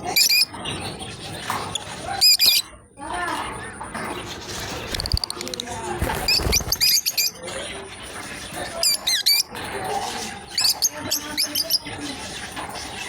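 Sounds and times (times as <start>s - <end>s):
lovebirds chirping: 4.4s - 7.6s.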